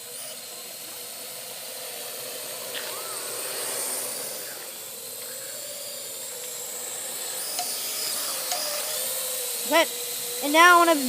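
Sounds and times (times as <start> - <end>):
drone propellers whirring: 0.0 - 11.0.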